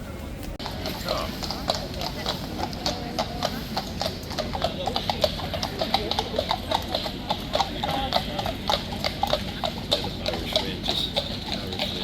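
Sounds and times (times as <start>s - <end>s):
horse hooves clip-clopping: 0.4s - 12.0s.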